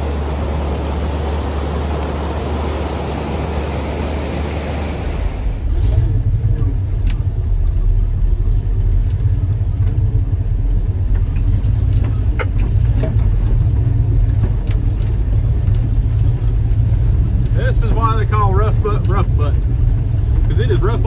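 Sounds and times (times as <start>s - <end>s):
vehicle engine running low: 0.0s - 21.0s
knocks and rattles over rocks: 5.6s - 21.0s.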